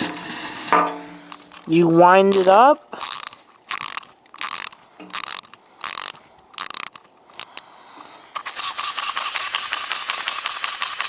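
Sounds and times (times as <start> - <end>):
clockwork winding ratchet clicks: 2.3 - 7.6, 8.3 - 11.0
spring motor ticking: 2.3 - 7.6, 8.3 - 11.0.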